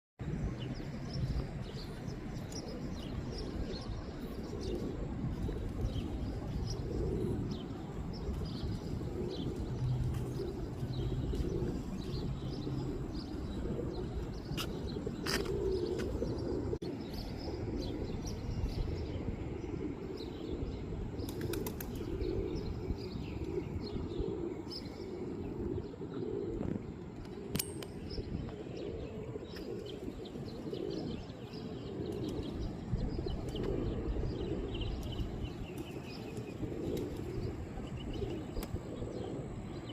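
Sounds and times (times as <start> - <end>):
pigeons cooing: 1.1 - 39.9
wings flapping: 21.2 - 22.2.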